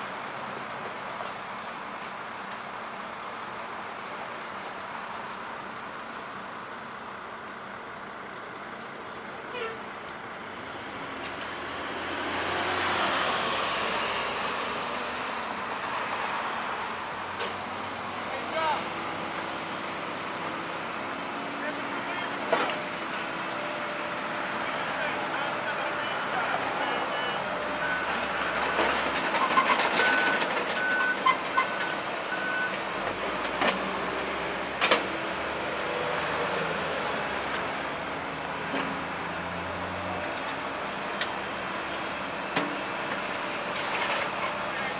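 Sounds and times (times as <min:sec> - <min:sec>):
heavy construction machinery running: 0:00.2 - 0:44.9
vehicle passing by: 0:10.8 - 0:17.2
reversing alarm beeping: 0:24.6 - 0:28.9, 0:30.0 - 0:32.8.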